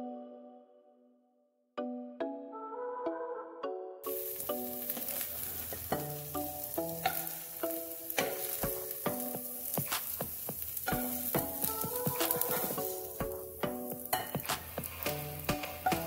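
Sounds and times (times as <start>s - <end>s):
light background music: 1.8s - 16.0s
food sizzling in a pan: 4.0s - 16.0s.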